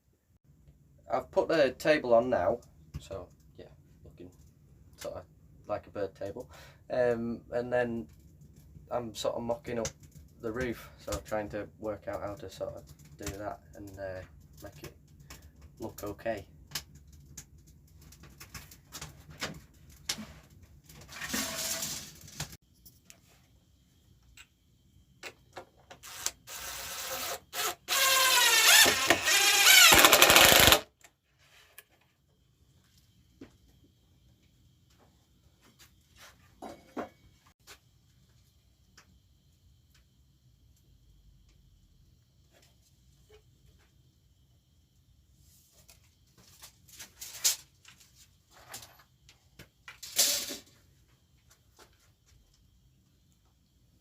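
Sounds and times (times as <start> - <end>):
handheld power tool running: 26.0 - 30.8.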